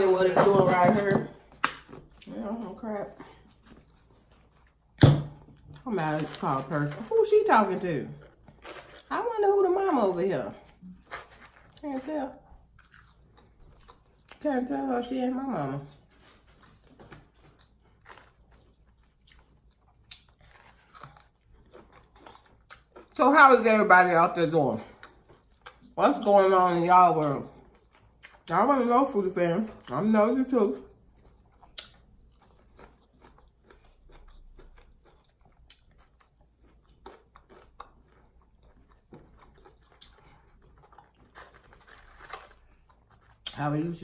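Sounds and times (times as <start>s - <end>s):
chewing crunchy fried food: 3.2s - 9.2s, 10.5s - 14.5s, 15.8s - 23.3s, 24.8s - 26.0s, 27.5s - 28.5s, 30.7s - 43.6s.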